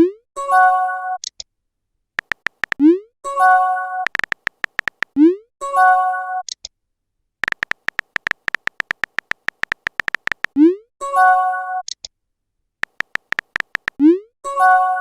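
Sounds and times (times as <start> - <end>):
keyboard typing clicks: 2.2 - 2.8, 4.1 - 5.1, 7.4 - 10.6, 12.8 - 14.0.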